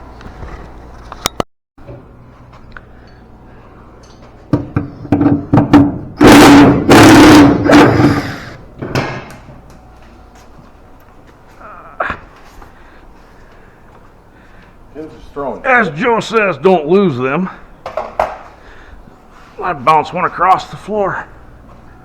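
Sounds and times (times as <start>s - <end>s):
pneumatic impact wrench hammering: 4.8s - 9.3s.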